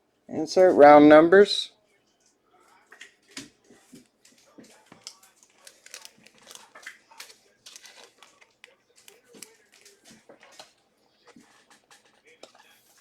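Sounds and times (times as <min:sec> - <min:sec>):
cards rustling and clicking: 0:03.3 - 0:13.0
wrapper crinkling: 0:04.7 - 0:13.0.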